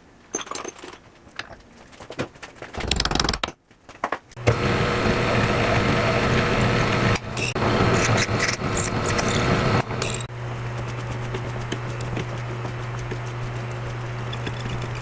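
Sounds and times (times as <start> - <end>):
electric power tool running: 4.4 - 10.7.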